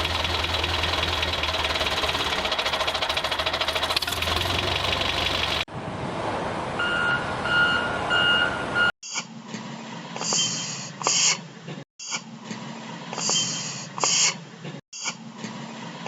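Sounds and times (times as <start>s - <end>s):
diesel engine knocking: 0.0s - 5.7s.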